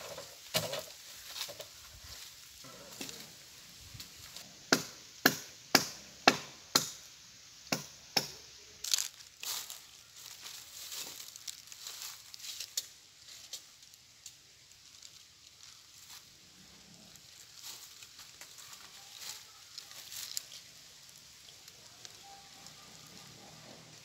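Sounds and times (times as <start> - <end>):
blade chopping into wood: 4.7 - 7.0
rustling: 8.8 - 24.0.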